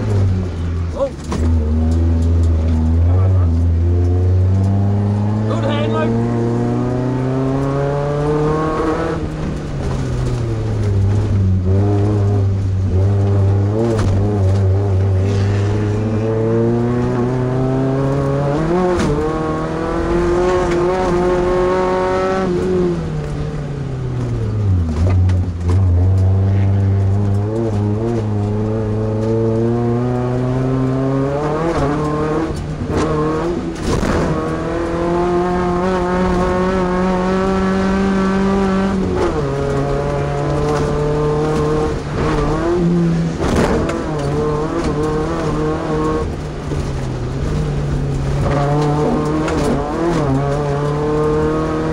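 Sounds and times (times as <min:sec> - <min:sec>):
truck engine revving: 0:00.0 - 0:23.4, 0:24.1 - 0:51.9
truck thumping over rough ground: 0:32.8 - 0:34.6.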